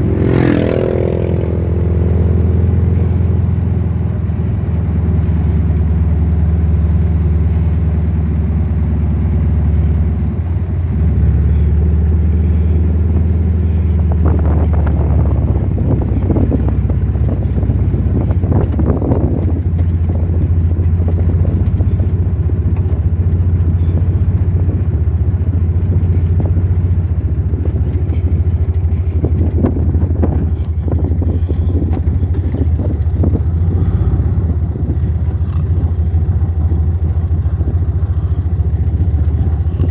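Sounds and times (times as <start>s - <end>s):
vehicle engine running under load: 0.0s - 39.9s
body and suspension clattering: 10.8s - 39.9s.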